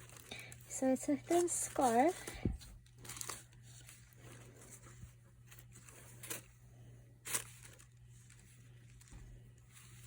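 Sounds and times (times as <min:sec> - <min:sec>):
scarf rustling: 0:00.0 - 0:06.6.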